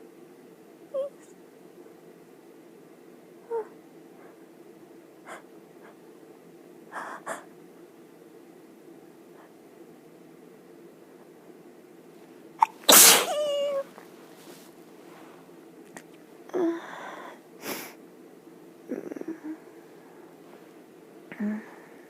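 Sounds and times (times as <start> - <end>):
person sneezing: 12.6 - 13.8
sniff: 17.6 - 18.0
breathy sounds: 21.3 - 22.0.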